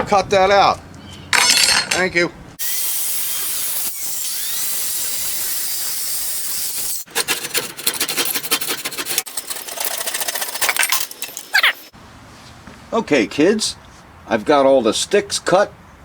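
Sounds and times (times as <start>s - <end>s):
saw cutting through wood: 2.6s - 10.2s.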